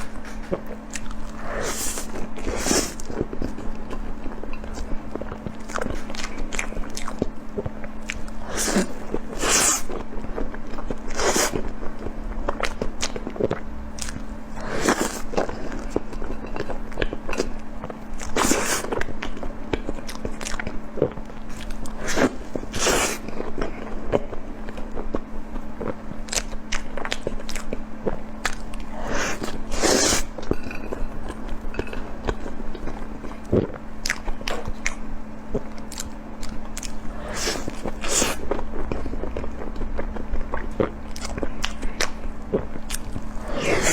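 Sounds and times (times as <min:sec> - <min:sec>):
person chewing food: 0:00.0 - 0:43.9
steady low hum: 0:00.0 - 0:43.9.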